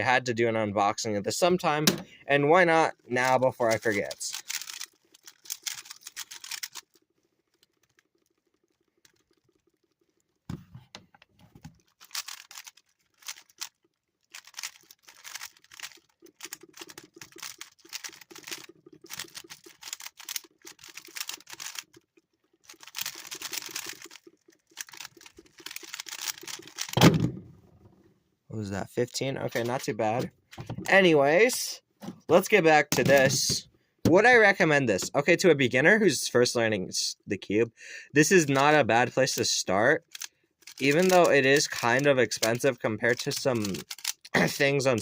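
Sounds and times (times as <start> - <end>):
plastic puzzle cube clicking: 4.3 - 6.9, 12.0 - 22.0, 22.7 - 27.0, 40.1 - 42.6, 43.2 - 44.3
loud thump: 27.0 - 27.6.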